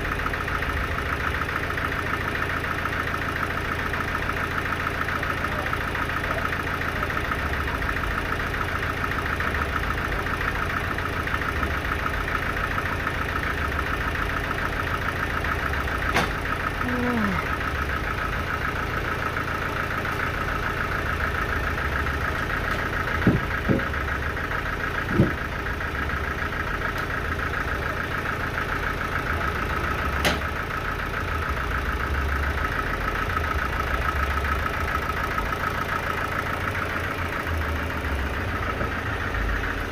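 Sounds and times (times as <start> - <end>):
sawmill engine running: 0.0 - 39.9
sharp knocks: 23.2 - 23.9.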